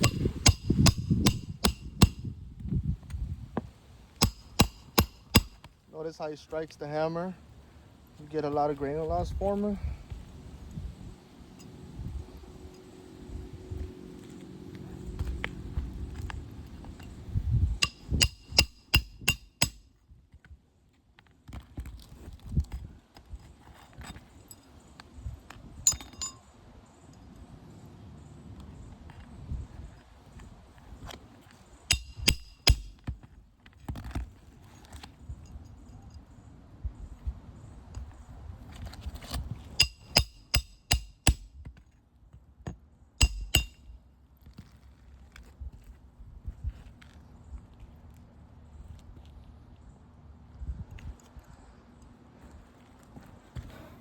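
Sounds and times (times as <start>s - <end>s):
hammer driving roofing nails: 0.0s - 2.2s, 4.2s - 5.7s
hammer striking nails: 0.0s - 2.3s, 4.2s - 5.7s, 17.8s - 19.8s, 31.9s - 33.1s, 39.8s - 41.5s, 43.2s - 43.8s.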